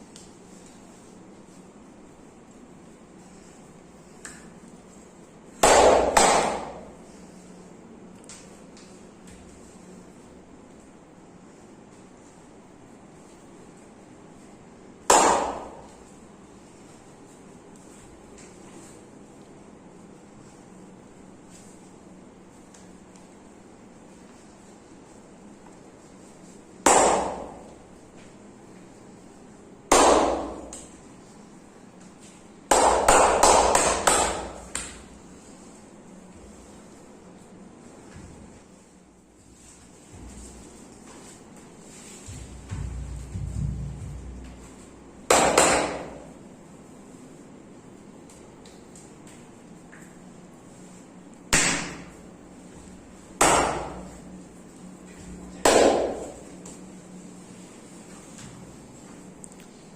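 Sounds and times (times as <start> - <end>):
hand slaps of massage: 5.6 - 6.9, 15.0 - 16.0, 26.8 - 27.8, 29.9 - 31.0, 32.7 - 35.1, 45.3 - 46.2, 51.5 - 52.2, 53.4 - 54.2, 55.6 - 56.8
hand slaps on body: 15.1 - 15.9, 32.7 - 35.0, 51.5 - 52.1.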